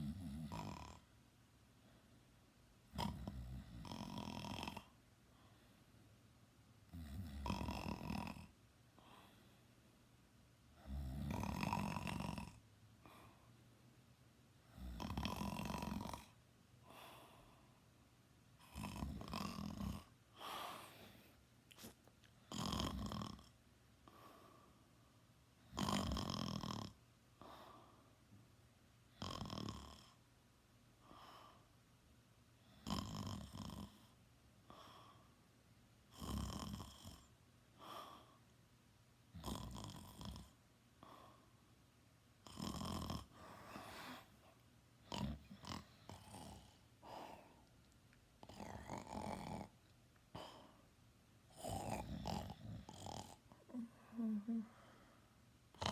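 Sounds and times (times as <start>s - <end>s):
soft breath: 8.9s - 10.0s, 13.0s - 13.7s, 16.8s - 18.0s, 20.3s - 22.1s, 24.0s - 25.1s, 27.4s - 28.3s, 43.3s - 47.8s, 50.3s - 51.0s, 53.5s - 55.4s
person snoring loud: 10.9s - 12.6s, 14.8s - 16.3s, 18.7s - 20.0s, 22.5s - 23.4s, 25.7s - 26.9s, 42.5s - 44.2s, 45.1s - 46.8s, 48.5s - 49.7s, 51.6s - 54.7s.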